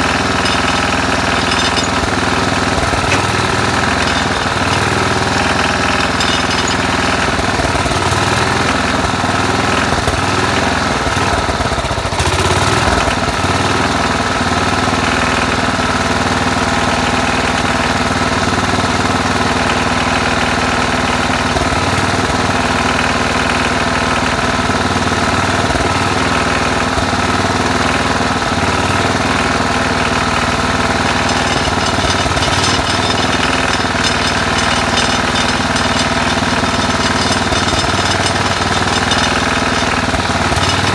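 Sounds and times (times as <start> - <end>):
tractor engine chugging: 0.0 - 9.0, 30.7 - 40.9.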